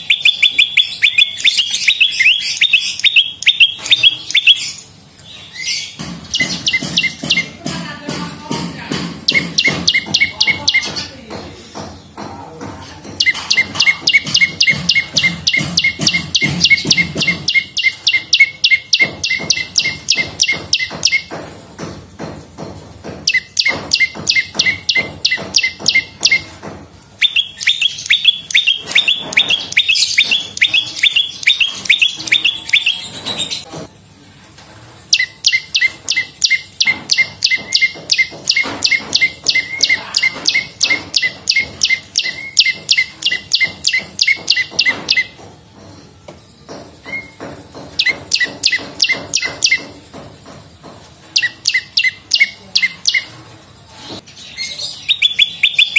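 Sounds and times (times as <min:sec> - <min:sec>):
bird chip notes: 0:00.0 - 0:05.0, 0:05.6 - 0:07.7, 0:09.2 - 0:11.1, 0:13.2 - 0:21.3, 0:27.2 - 0:33.6.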